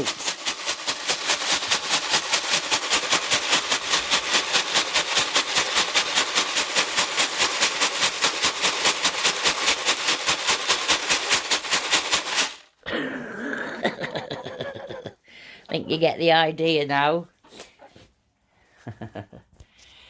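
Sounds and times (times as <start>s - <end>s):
chickens pecking container: 0.0s - 12.7s.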